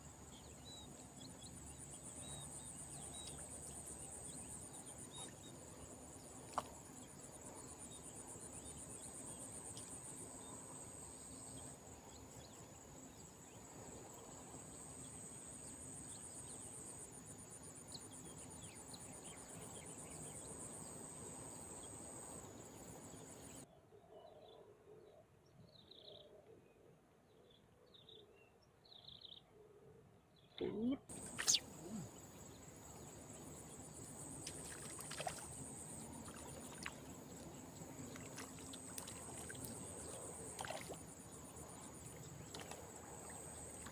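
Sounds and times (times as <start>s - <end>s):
faint background hiss: 30.3s - 43.9s
insects trilling: 30.7s - 43.9s
short insect chirps: 31.1s - 43.9s.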